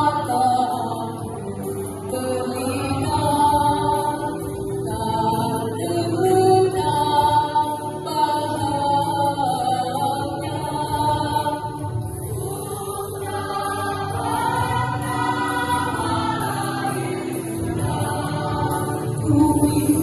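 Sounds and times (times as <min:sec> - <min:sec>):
choir singing: 0:12.2 - 0:20.0.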